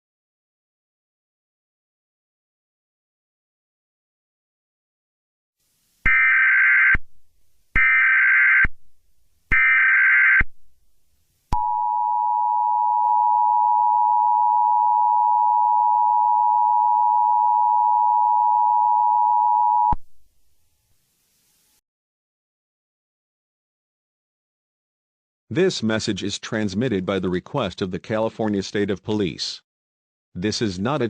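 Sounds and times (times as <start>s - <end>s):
two-tone attention signal beep: 11.6s - 20.0s.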